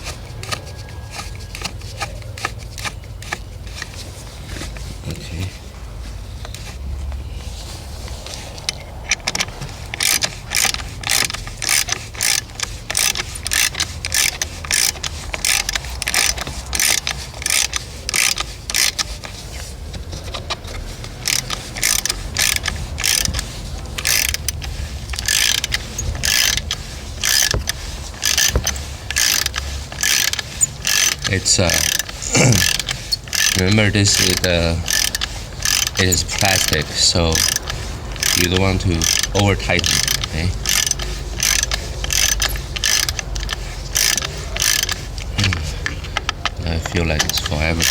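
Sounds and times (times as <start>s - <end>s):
ratchet wrench clicking: 8.6s - 46.4s, 47.1s - 47.9s.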